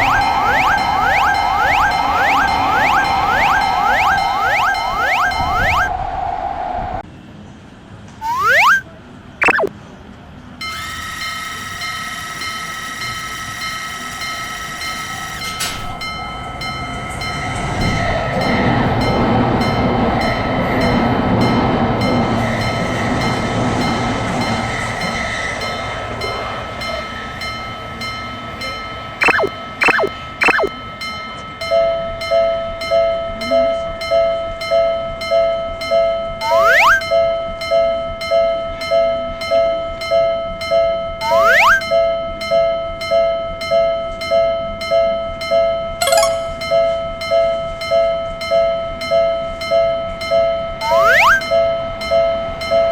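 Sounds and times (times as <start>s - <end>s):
level crossing bell ringing: 0.0s - 5.9s, 46.0s - 46.9s
pulsing two-note tone: 0.0s - 5.9s, 8.2s - 8.8s, 9.4s - 9.7s, 29.2s - 30.7s, 36.4s - 37.2s, 41.2s - 42.0s, 46.0s - 46.8s, 50.8s - 51.6s
short rising toots: 0.0s - 7.0s, 8.2s - 8.8s, 36.4s - 37.1s.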